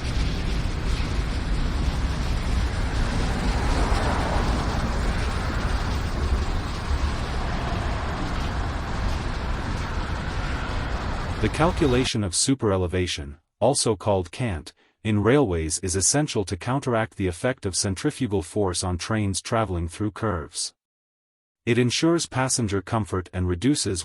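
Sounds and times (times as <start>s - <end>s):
vehicle engine rumbling: 0.0s - 12.1s.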